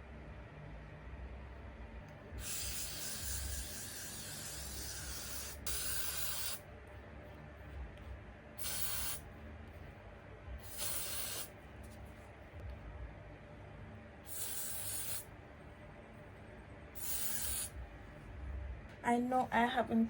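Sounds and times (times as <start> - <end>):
sprayer hissing: 2.4 - 6.6, 8.6 - 9.2, 10.6 - 11.5, 14.3 - 15.3, 17.0 - 17.7.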